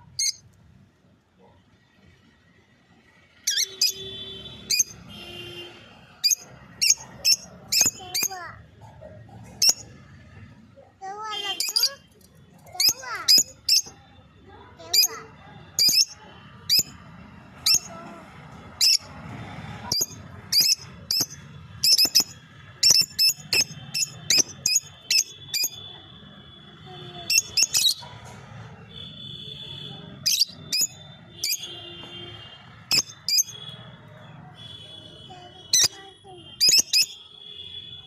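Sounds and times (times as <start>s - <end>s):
lovebirds chirping: 19.9s - 25.8s.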